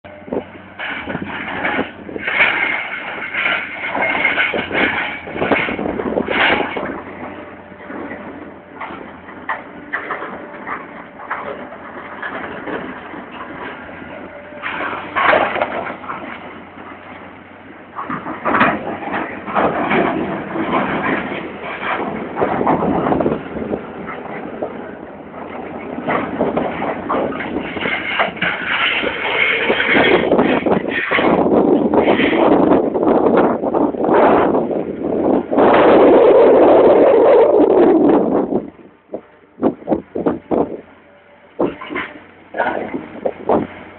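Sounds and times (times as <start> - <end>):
heavy machinery: 0.0 - 43.9
stones tumbling and clattering: 0.9 - 24.8, 25.4 - 32.8.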